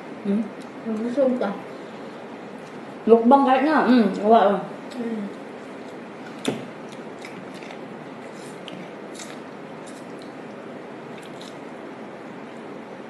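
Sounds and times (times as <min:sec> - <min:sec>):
steady background hiss: 0:00.0 - 0:13.0
person chewing food: 0:05.8 - 0:11.6.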